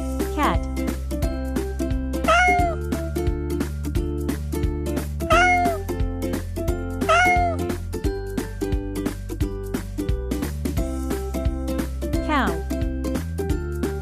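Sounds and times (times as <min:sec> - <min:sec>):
background music: 0:00.0 - 0:14.0
cat meowing: 0:02.3 - 0:02.8, 0:05.3 - 0:05.8, 0:07.1 - 0:07.6.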